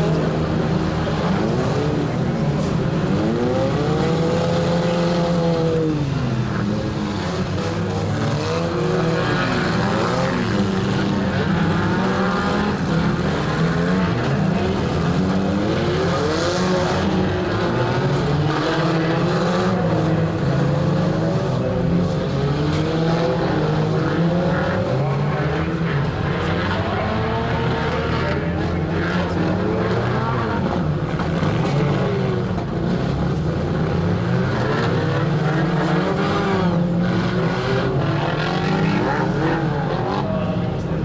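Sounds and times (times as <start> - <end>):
car engines revving: 0.0 - 41.0.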